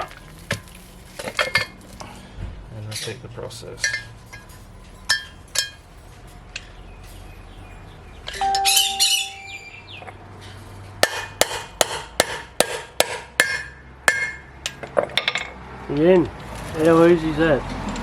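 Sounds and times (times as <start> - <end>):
metal parts clinking: 2.9 - 7.3
hammer striking metal: 8.4 - 9.6, 11.0 - 14.5.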